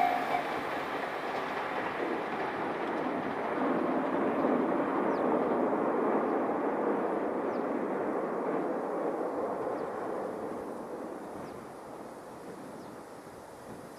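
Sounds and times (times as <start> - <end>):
diesel train rumbling: 0.0 - 4.8.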